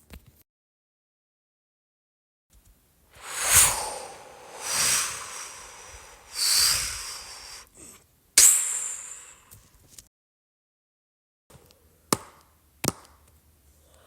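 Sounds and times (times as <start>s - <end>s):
hissing whoosh fight effects: 3.2s - 9.6s.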